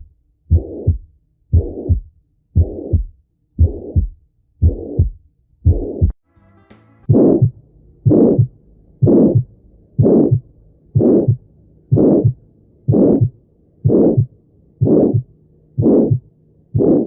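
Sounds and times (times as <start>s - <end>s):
low thumps: 0.0s - 6.2s, 7.1s - 17.0s
rhythmic whooshing pulses: 7.0s - 17.0s.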